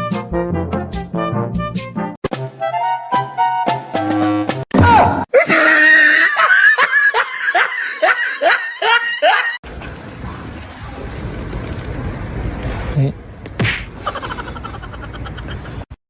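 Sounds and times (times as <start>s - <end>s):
high-pitched laughing: 5.3s - 9.6s, 14.0s - 15.9s.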